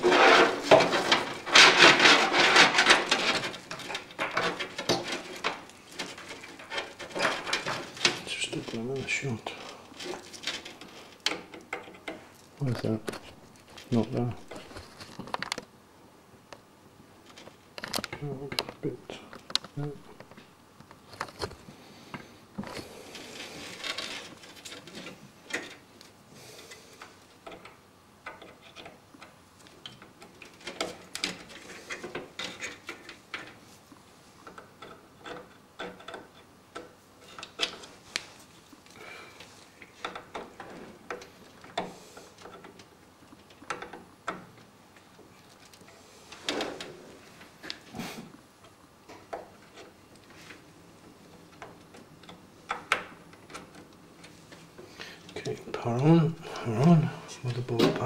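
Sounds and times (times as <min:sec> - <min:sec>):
cables rustling against case: 0:00.0 - 0:15.7, 0:22.6 - 0:27.6.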